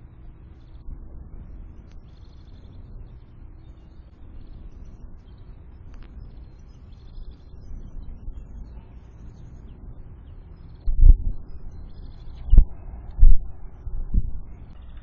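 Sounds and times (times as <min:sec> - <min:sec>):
songbirds chirping: 0:00.0 - 0:15.0
steady low rumble: 0:00.0 - 0:15.0.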